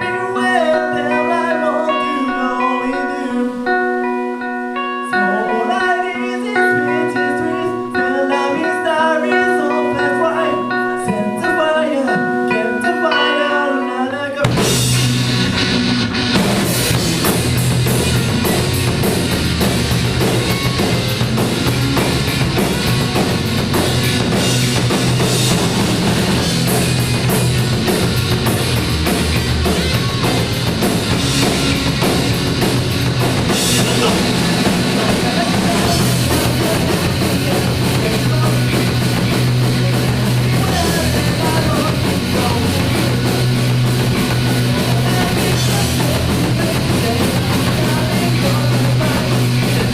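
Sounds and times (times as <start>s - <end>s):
bass guitar: 0.0s - 13.5s, 14.3s - 49.9s
electric guitars: 0.0s - 49.9s
drum kit: 14.4s - 49.9s.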